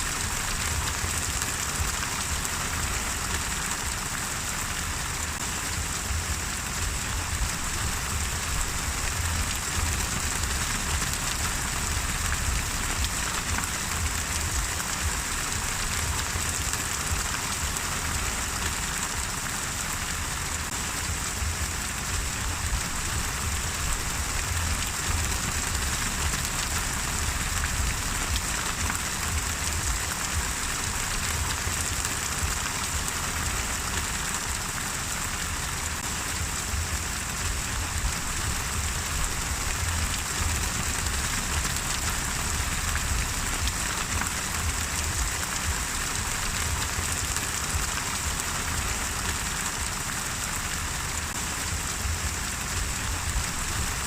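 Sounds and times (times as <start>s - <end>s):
rain pattering: 0.0s - 54.0s
low rumble: 5.7s - 17.3s, 20.7s - 32.7s, 36.2s - 48.4s.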